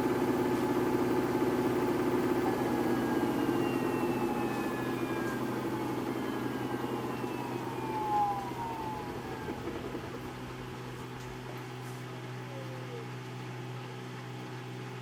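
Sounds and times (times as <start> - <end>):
washing machine motor whine: 0.0 - 15.0
washing machine drum rumble: 0.1 - 11.9.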